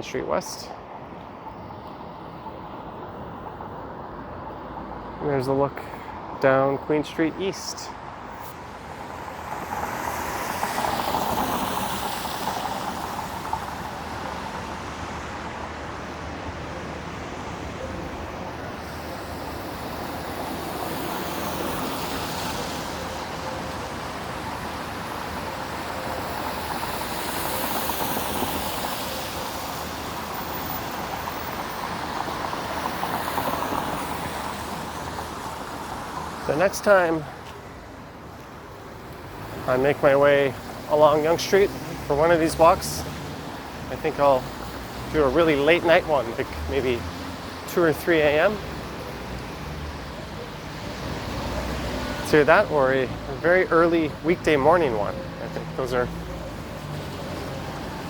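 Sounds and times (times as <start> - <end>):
cars passing: 0.0 - 58.0
steady traffic hum: 0.0 - 58.0.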